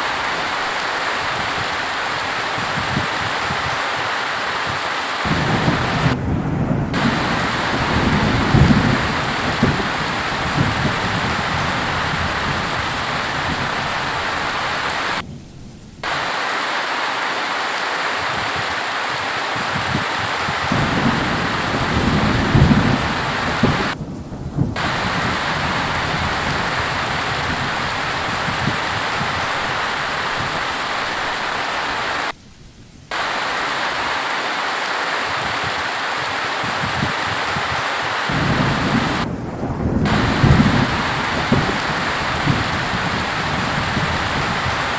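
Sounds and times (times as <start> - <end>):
heavy rain: 0.0 - 44.9
low rumble of thunder: 4.6 - 16.1, 19.6 - 33.2, 36.6 - 44.9.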